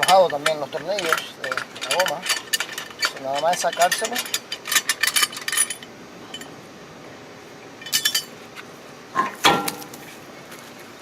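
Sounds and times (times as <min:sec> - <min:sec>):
lug nuts clinking: 0:00.0 - 0:06.5.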